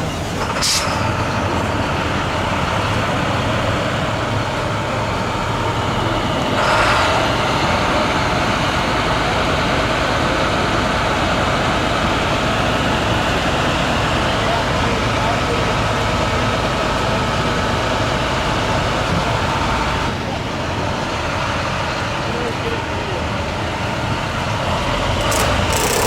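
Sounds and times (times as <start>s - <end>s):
engine and road traffic rumble: 0.0s - 26.0s.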